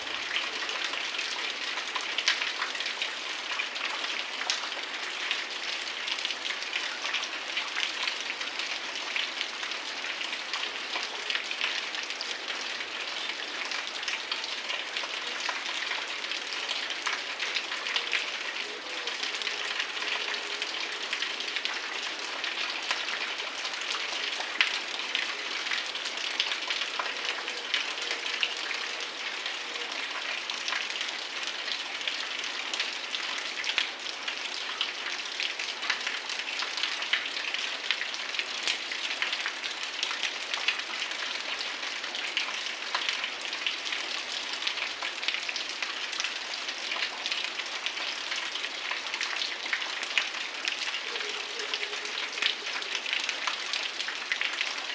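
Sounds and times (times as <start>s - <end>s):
raindrops pattering on hard surfaces: 0.0s - 54.9s.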